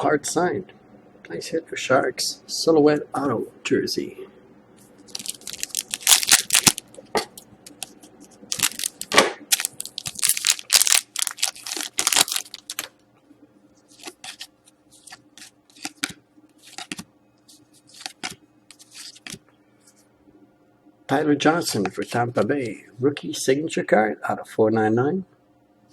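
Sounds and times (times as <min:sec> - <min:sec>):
cards being handled: 0:05.0 - 0:07.1, 0:07.7 - 0:12.9, 0:13.9 - 0:19.4
card wrapper crinkling and tearing: 0:05.1 - 0:06.9, 0:08.5 - 0:12.9, 0:13.9 - 0:17.0.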